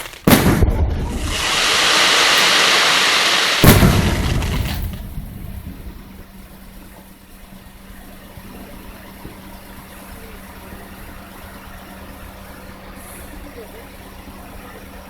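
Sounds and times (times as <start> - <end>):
firework burst rumble: 0.0 - 7.9
steady low hum: 0.0 - 15.0.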